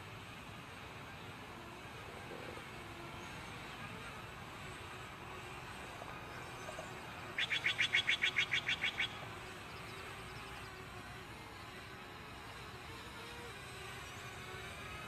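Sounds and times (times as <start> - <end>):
songbird trilling: 7.4 - 9.2.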